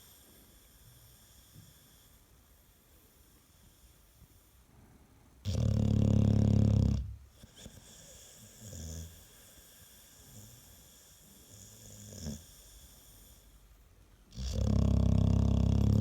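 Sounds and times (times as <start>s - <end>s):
faint dog breaths: 0.0s - 5.8s, 7.0s - 16.0s
dog snoring: 5.4s - 13.5s, 14.3s - 16.0s.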